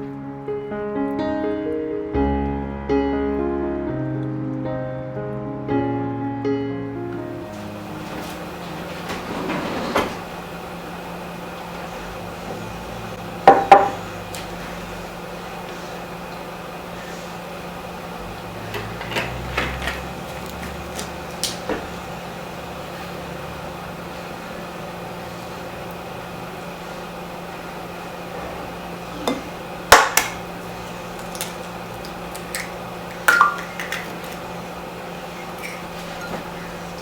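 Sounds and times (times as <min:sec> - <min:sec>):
steady electrical hum: 0:02.9 - 0:37.0
knocks of objects being handled: 0:13.5 - 0:14.0.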